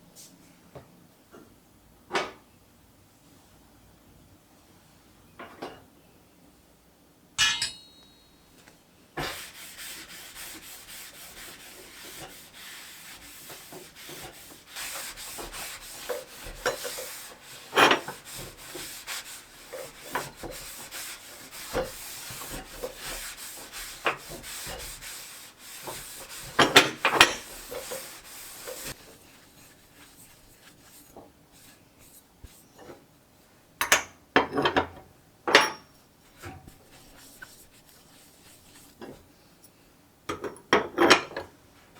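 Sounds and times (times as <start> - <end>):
hands scrubbing a hard surface: 9.2 - 32.9, 36.3 - 39.3.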